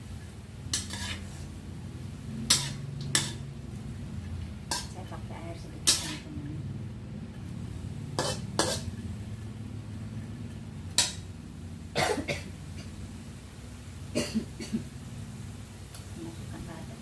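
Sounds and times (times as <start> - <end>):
steady low hum: 0.0 - 17.0
metal spatula scraping in wok: 0.7 - 1.6, 2.4 - 3.5, 4.2 - 6.4, 7.3 - 9.1.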